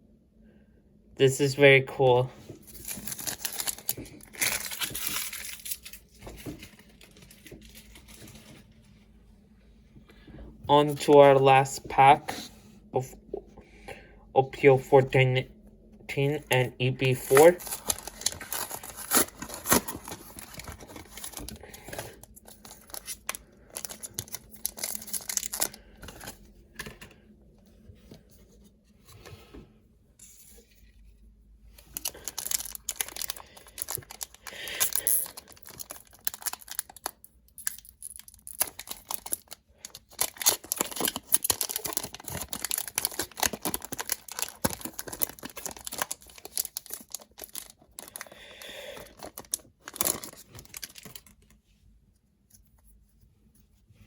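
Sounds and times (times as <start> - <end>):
cards rustling: 2.5 - 8.6, 16.2 - 27.2, 31.7 - 51.6
foil pack tearing and crinkling: 2.6 - 8.2, 17.2 - 26.4, 31.8 - 51.4.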